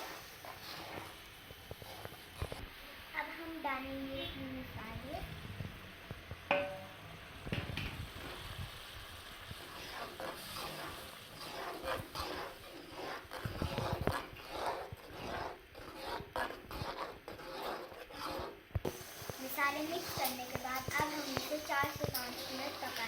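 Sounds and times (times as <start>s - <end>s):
spoon stirring in a pan: 0.0s - 23.0s
sharp knock: 6.5s - 6.9s.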